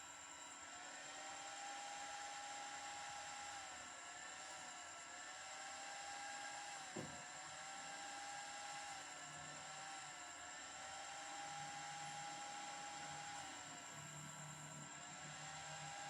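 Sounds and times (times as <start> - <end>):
brief knock: 7.0 - 7.2.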